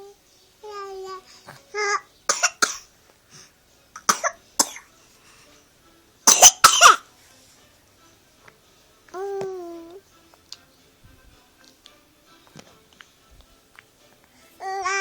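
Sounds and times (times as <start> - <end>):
baby coughing: 1.8 - 2.9, 4.0 - 4.9, 6.3 - 7.0
baby vocal sounds: 9.1 - 10.0, 14.6 - 15.0.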